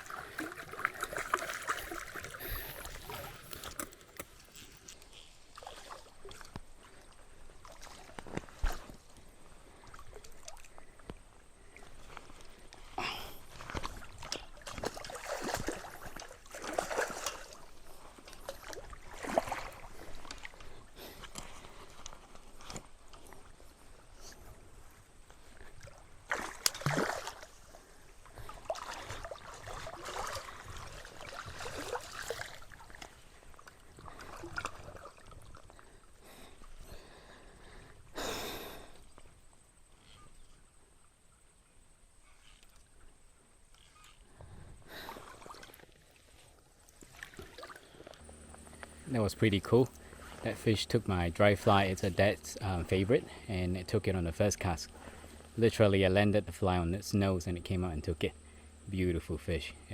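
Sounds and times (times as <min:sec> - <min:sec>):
water splashing from thrashing fish: 0:00.0 - 0:04.8, 0:13.5 - 0:23.3, 0:25.5 - 0:37.3, 0:46.9 - 0:48.7.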